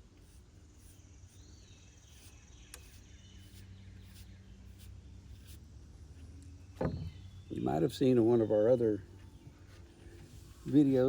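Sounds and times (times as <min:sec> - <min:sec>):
faint bird chirps: 0:00.2 - 0:05.6.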